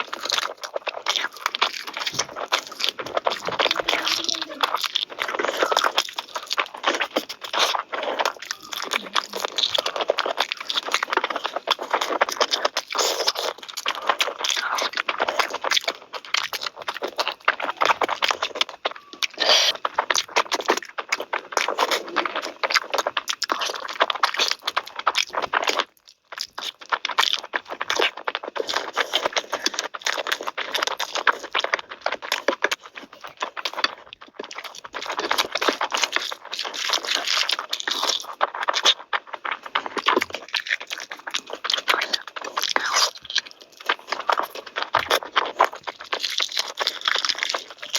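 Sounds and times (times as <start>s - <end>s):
chewing and crunching food: 0.0s - 47.9s.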